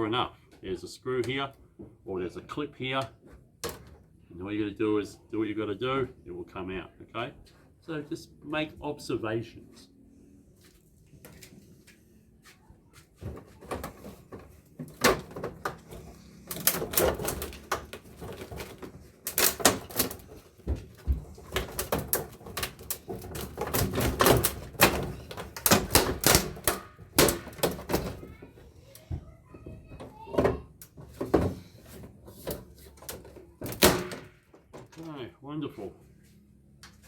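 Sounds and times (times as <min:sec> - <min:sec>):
plastic and metal parts clattering: 0:03.4 - 0:04.2, 0:13.2 - 0:35.2.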